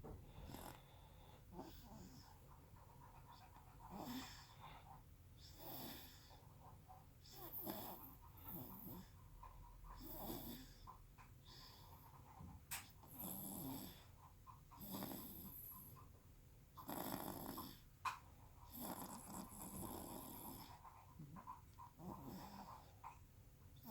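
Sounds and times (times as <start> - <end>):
baby snoring: 0.4 - 0.9, 7.3 - 9.1, 13.0 - 14.1, 14.8 - 15.7, 16.8 - 17.8, 18.7 - 20.8, 22.0 - 22.9.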